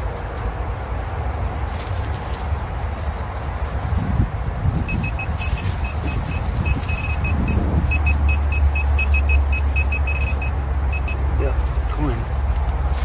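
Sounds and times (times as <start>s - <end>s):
metal detector beeping: 4.8s - 11.2s.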